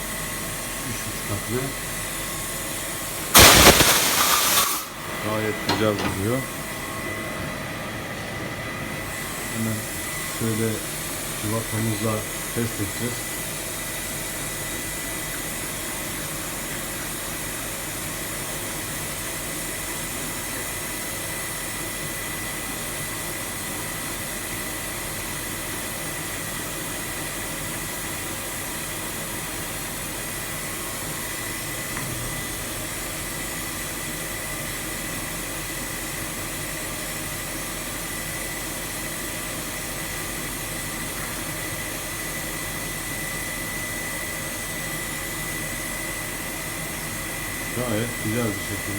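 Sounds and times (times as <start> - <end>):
machinery hiss and hum: 3.3 - 6.8
high whine: 3.4 - 6.5.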